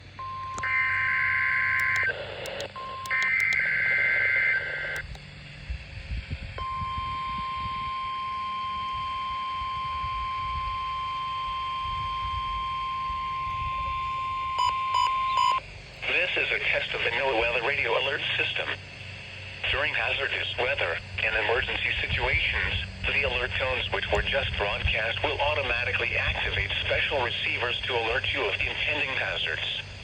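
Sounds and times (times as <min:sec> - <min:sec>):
steady warning alarm tone: 0:00.2 - 0:05.2, 0:06.6 - 0:25.3
warbling digital header tones: 0:10.8 - 0:15.6.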